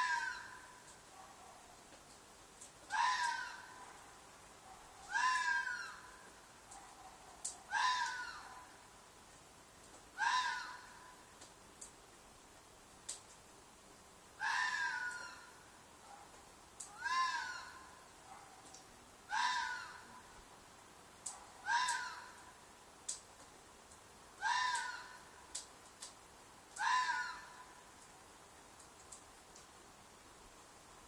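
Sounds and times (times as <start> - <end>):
fox screaming: 0.0 - 0.6, 2.9 - 3.8, 5.0 - 6.2, 7.7 - 8.7, 10.2 - 11.1, 14.4 - 15.6, 16.9 - 18.0, 19.3 - 20.1, 21.6 - 22.4, 24.4 - 25.2, 26.8 - 27.8.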